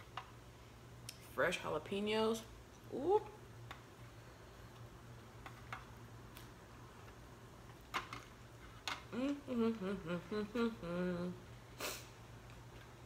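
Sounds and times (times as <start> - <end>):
woman humming: 9.1 - 11.9.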